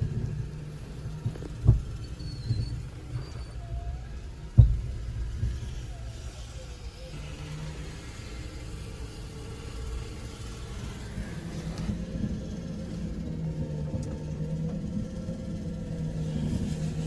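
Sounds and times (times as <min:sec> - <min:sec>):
wind and rain around car: 0:00.0 - 0:17.0.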